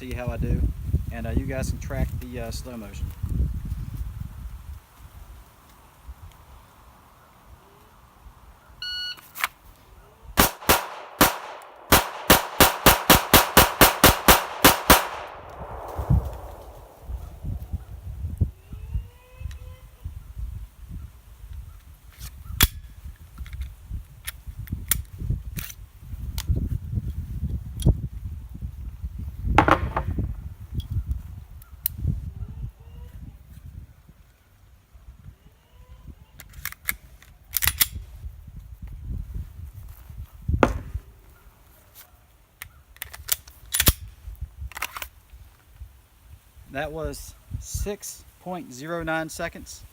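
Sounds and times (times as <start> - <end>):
gunshots: 10.4 - 17.7, 29.6 - 30.2
pistol shots: 10.4 - 17.7, 29.6 - 30.2, 40.6 - 41.0
low rumble: 15.2 - 18.1.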